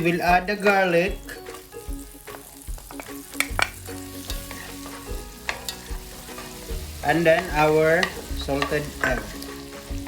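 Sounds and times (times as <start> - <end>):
garlic sizzling in butter: 0.0 - 10.0
utensil tapping a pan: 2.8 - 9.4.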